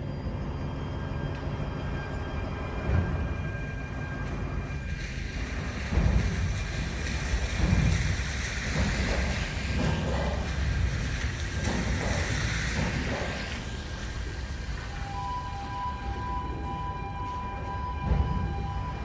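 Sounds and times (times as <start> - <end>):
railway carriages rumbling: 0.0 - 19.0
heavy knocks of carriages: 5.6 - 15.1.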